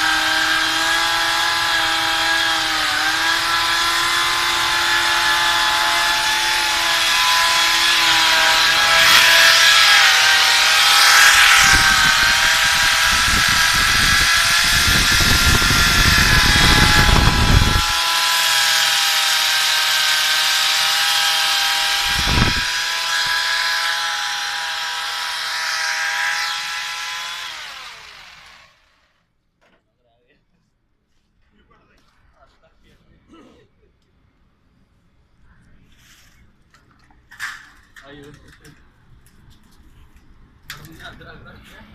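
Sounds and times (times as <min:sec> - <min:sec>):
drill bit grinding into wall: 0:00.0 - 0:29.1
electric core drill whining: 0:00.0 - 0:29.2.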